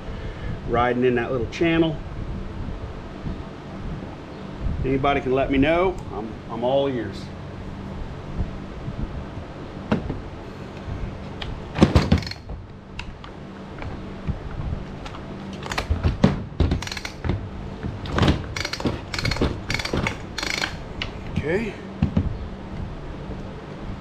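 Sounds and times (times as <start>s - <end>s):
steady low hum: 0.0s - 24.0s
tools clicking and knocking: 11.8s - 13.1s, 15.6s - 17.4s, 18.1s - 21.1s.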